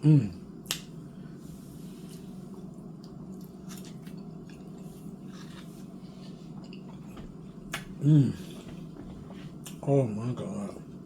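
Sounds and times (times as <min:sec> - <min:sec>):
wet chewing with mouth smacks: 0:02.7 - 0:05.7.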